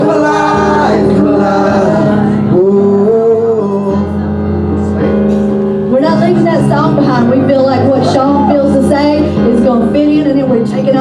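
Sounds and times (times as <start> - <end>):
voices singing: 0.0 - 4.1
instrumental backing with bass: 0.0 - 11.0.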